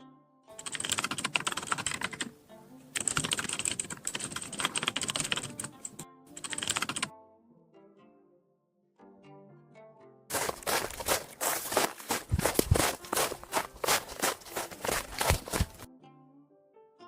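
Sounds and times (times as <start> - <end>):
faint plucked-string music: 0.0 - 0.6, 2.3 - 3.0, 5.9 - 6.4, 7.1 - 12.2, 15.4 - 17.0
keyboard typing: 0.6 - 2.3, 3.0 - 7.1, 10.3 - 15.9.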